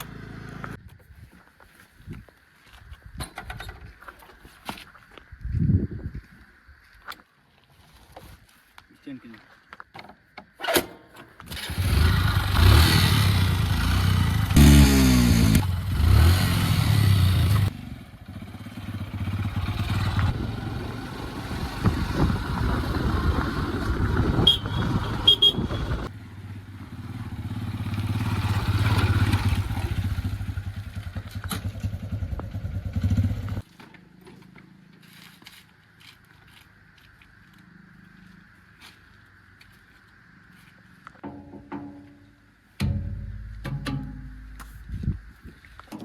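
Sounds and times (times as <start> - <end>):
diesel machinery engine revving: 11.6 - 31.0.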